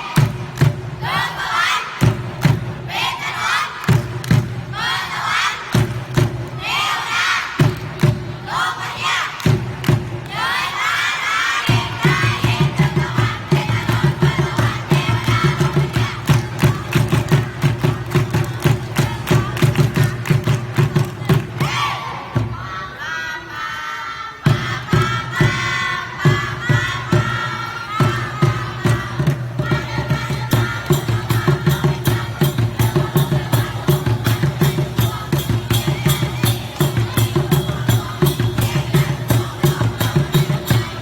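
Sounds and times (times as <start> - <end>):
group of voices chanting and cheering: 0.0 - 41.0
music with a fast beat: 11.7 - 21.8, 24.5 - 41.0.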